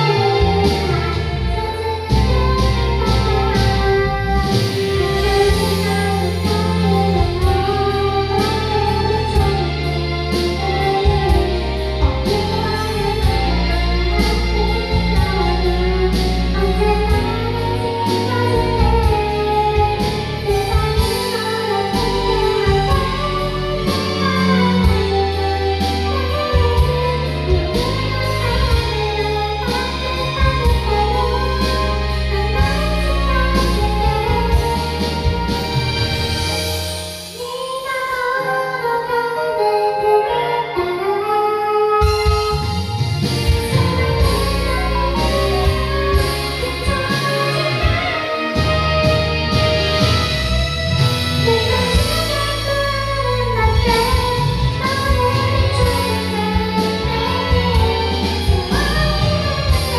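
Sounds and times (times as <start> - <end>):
karaoke backing track: 0.0 - 59.9
woman singing pop ballad: 0.0 - 59.9.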